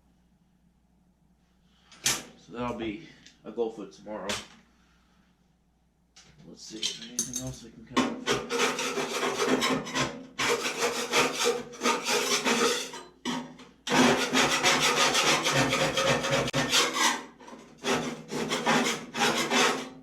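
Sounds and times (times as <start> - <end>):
rasping scraping on metal: 8.2 - 20.0.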